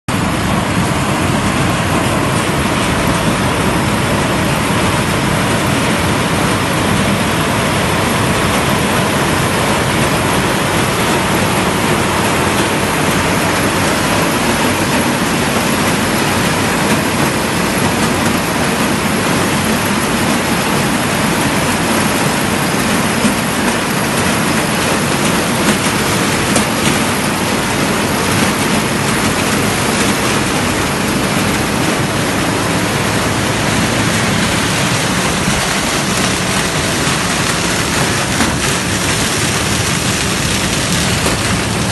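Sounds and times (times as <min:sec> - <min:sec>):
harvester engine and machinery: 0:00.1 - 0:41.9.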